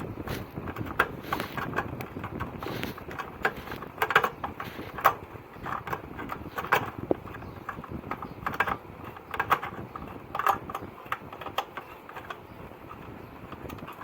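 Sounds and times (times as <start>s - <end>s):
hand tools clicking on metal: 0.0s - 14.0s.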